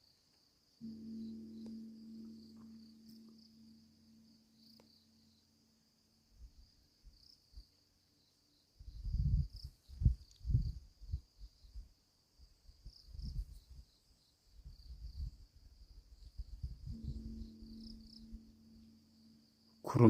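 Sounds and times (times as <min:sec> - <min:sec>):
crickets chirring: 0:00.0 - 0:20.0
temple bell humming: 0:00.8 - 0:05.7, 0:16.9 - 0:20.0.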